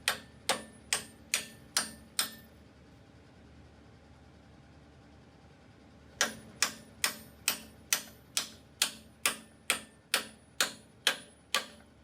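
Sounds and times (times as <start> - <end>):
hammer striking metal: 0.0 - 2.4, 6.2 - 11.9.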